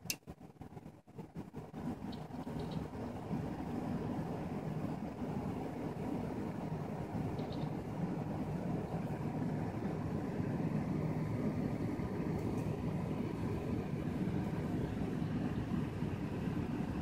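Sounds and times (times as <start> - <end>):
computer fans humming: 0.0 - 17.0.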